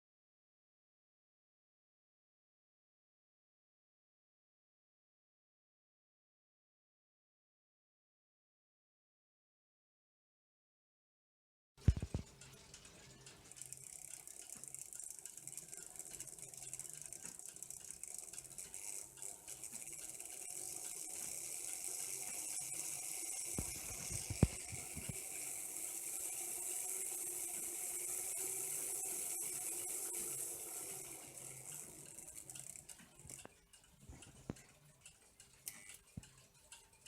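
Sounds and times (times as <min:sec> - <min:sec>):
model locomotive motor whirring: 0:11.8 - 0:37.0.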